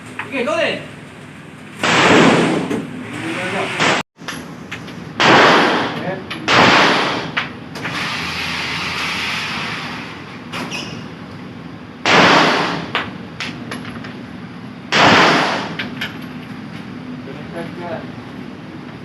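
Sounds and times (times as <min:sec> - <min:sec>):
loud gunshots: 0:01.8 - 0:02.7, 0:03.8 - 0:04.0, 0:05.2 - 0:07.4, 0:12.0 - 0:13.0, 0:14.9 - 0:15.8.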